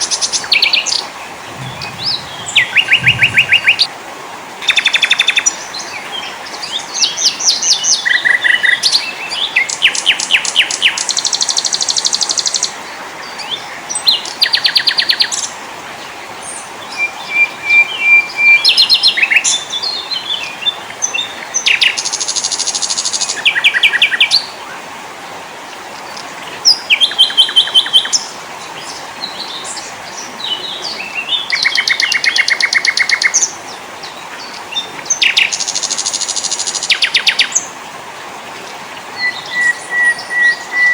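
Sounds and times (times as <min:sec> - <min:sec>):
songbirds chirping and trilling: 0:00.0 - 0:03.9, 0:38.3 - 0:40.9
steady hiss: 0:01.0 - 0:04.2.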